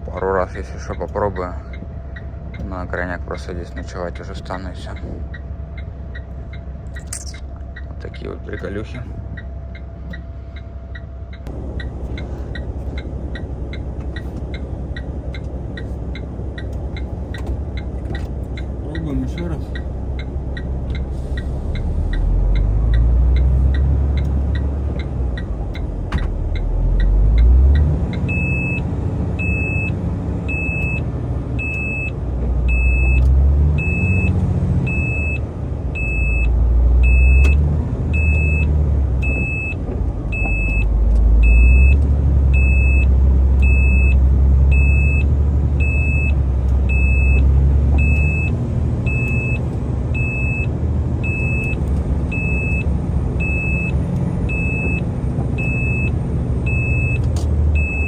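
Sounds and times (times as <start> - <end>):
warning beep: 7.0 - 7.9, 57.8 - 58.0
steady ticking: 9.3 - 29.9
truck diesel engine revving: 11.4 - 58.0.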